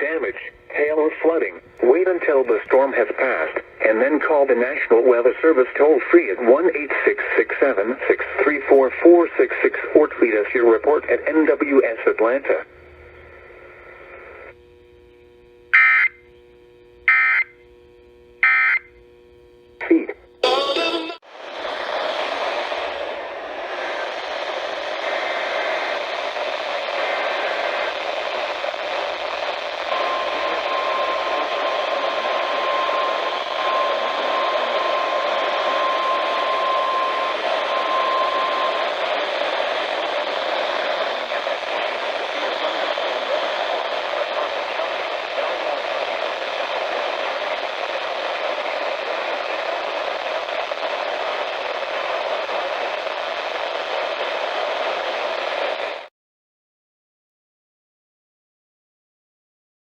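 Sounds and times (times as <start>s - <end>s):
radio static hiss: 0.0s - 19.0s, 19.7s - 56.1s
steady alert tone: 20.4s - 21.2s.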